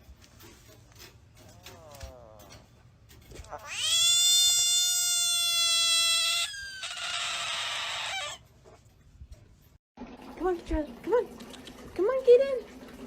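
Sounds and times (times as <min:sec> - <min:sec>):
cat meowing: 0:03.4 - 0:08.4
cat yowling: 0:03.4 - 0:08.4.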